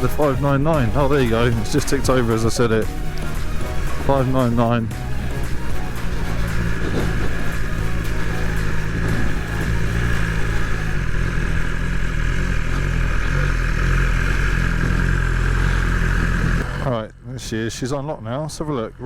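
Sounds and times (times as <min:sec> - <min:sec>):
wind and road rush: 0:00.0 - 0:16.9
motorcycle engine cruising: 0:00.0 - 0:17.2.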